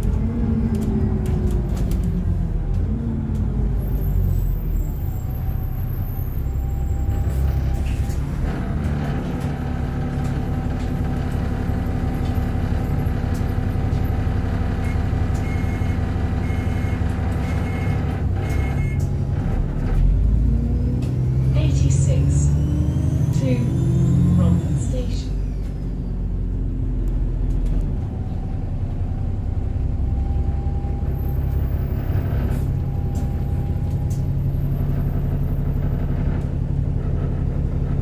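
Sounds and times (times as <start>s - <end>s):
bus engine rumble and whine: 0.0s - 38.0s.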